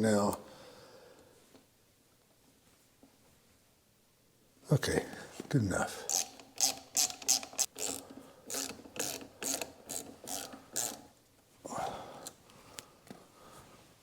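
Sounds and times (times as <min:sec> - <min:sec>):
hand ratchet clicking: 0:06.1 - 0:11.1.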